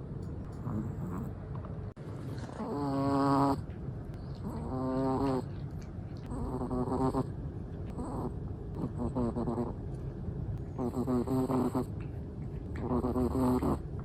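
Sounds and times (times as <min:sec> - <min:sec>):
dog snoring: 0:00.6 - 0:01.3, 0:02.6 - 0:03.6, 0:04.4 - 0:05.5, 0:06.3 - 0:07.3, 0:07.9 - 0:09.8, 0:10.7 - 0:11.9, 0:12.8 - 0:13.9.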